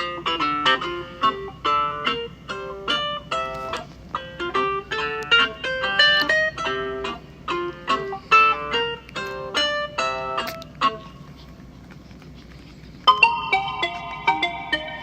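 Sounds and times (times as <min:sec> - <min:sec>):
phone alarm melody: 0:13.1 - 0:15.0.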